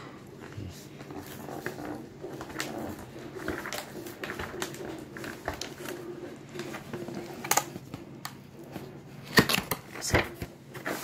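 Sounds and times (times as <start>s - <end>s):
packaging clicks and crackles: 3.4s - 10.5s.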